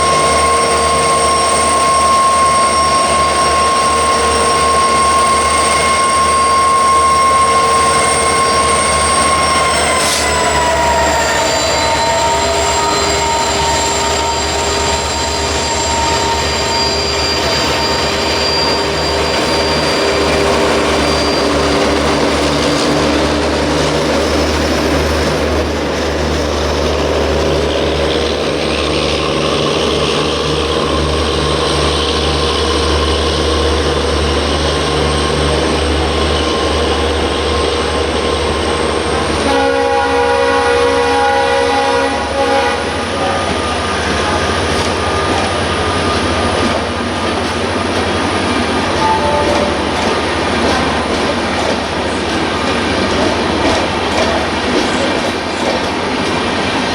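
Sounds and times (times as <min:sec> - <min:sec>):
multi-tone train horn: 0:00.0 - 0:25.7, 0:39.0 - 0:46.5, 0:48.8 - 0:51.2
locomotive engine humming: 0:00.0 - 0:56.9
train wheels rumbling on rails: 0:00.0 - 0:56.9.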